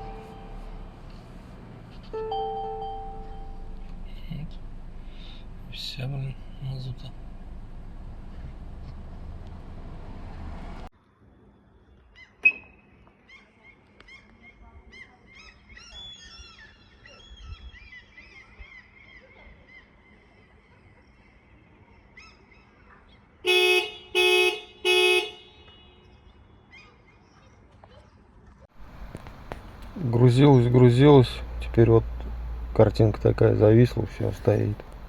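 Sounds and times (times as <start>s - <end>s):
car alarm: 0.0s - 0.9s, 2.2s - 3.8s, 12.4s - 12.9s
car horn blasts: 0.0s - 1.1s, 2.1s - 4.0s, 23.5s - 26.0s.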